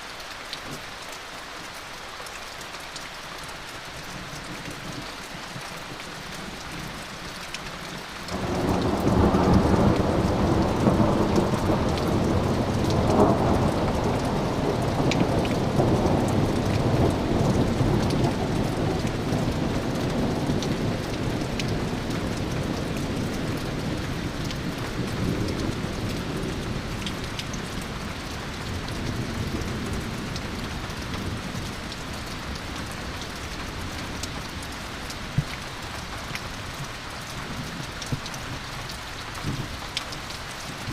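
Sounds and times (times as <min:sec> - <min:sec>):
steady rain: 0:00.0 - 0:40.9.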